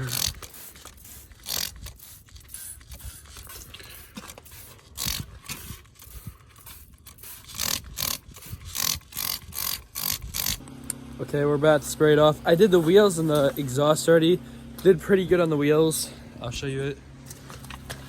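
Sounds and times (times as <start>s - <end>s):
spray bottle squirting: 0.0s - 10.6s.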